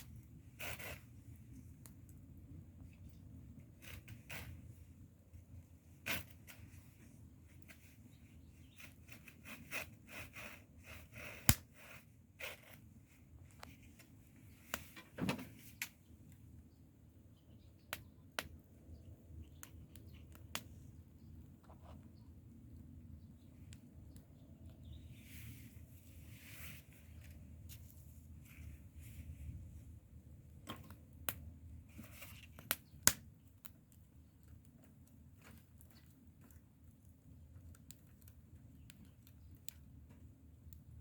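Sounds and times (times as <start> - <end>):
wood bonfire popping: 0.0 - 6.5, 17.8 - 20.8, 30.5 - 41.0
low rumble of fire: 0.0 - 41.0.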